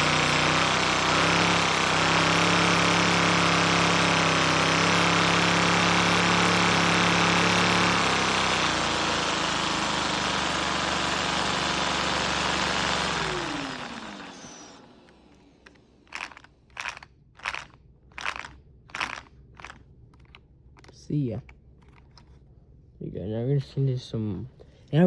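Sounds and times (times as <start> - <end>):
turbine engine hissing and spinning down: 0.0 - 17.6
short crunching sounds: 13.2 - 22.5.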